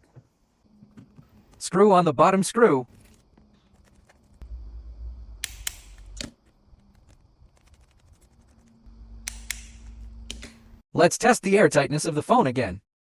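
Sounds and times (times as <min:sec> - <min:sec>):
low hum: 0:04.3 - 0:10.8
small tools clicking and tapping: 0:09.2 - 0:10.6.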